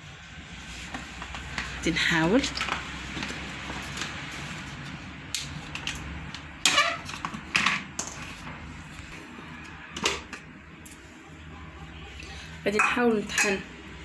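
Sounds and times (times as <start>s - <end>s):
kitchenware knocks and clinks: 12.8s - 13.6s.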